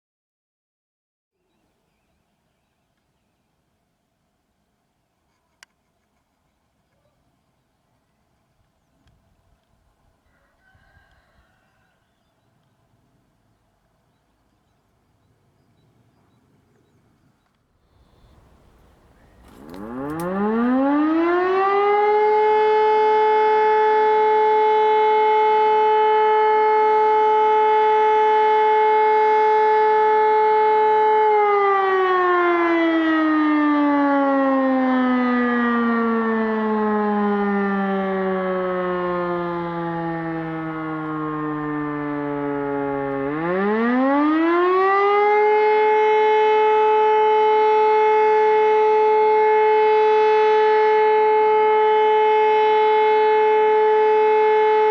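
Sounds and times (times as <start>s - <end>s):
motor siren wailing: 18.0s - 54.9s.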